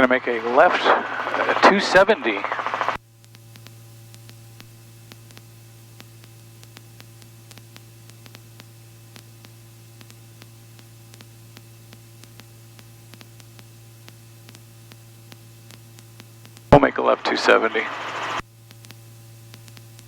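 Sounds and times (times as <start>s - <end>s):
low hum: 0.0s - 3.0s, 16.7s - 18.4s
static hiss: 0.0s - 20.0s
sharp clicks: 0.9s - 3.0s.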